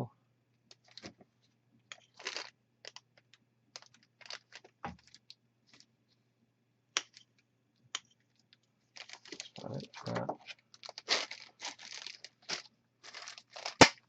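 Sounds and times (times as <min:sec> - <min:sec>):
packaging rustling: 0:01.9 - 0:03.0, 0:03.8 - 0:05.9, 0:08.9 - 0:14.0.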